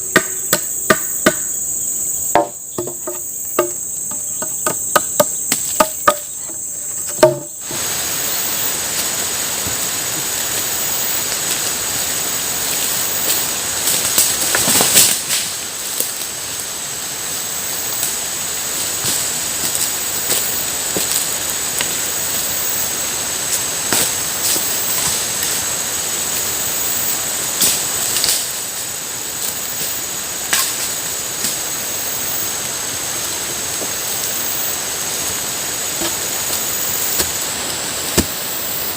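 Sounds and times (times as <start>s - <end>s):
sharp knocks: 0.0s - 1.5s, 2.3s - 7.6s
insects shrilling: 0.0s - 38.9s.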